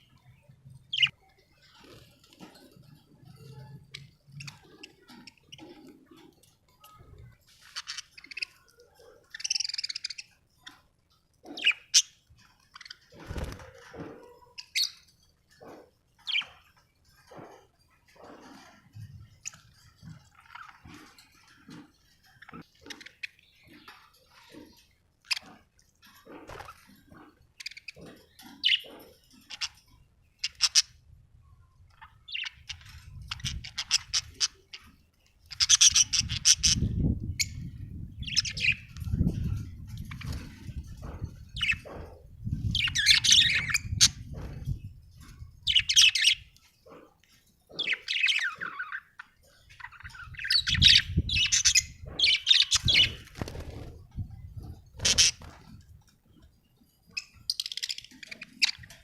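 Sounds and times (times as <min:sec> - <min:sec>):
budgerigars chirping: 0:07.7 - 0:10.3, 0:11.5 - 0:12.2, 0:35.5 - 0:36.8, 0:38.2 - 0:39.0, 0:41.0 - 0:44.2, 0:45.6 - 0:47.1, 0:47.7 - 0:53.4, 0:54.6 - 0:55.6.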